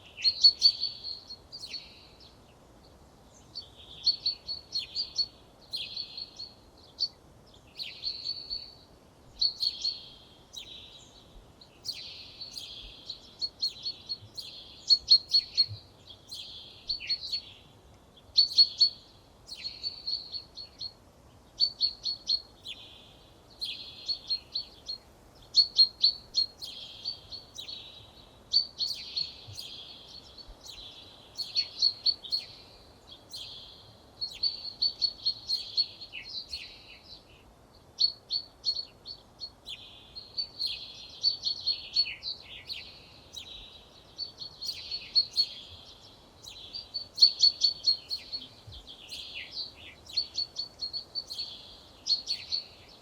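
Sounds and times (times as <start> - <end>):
songbird singing: 0.0 - 53.0.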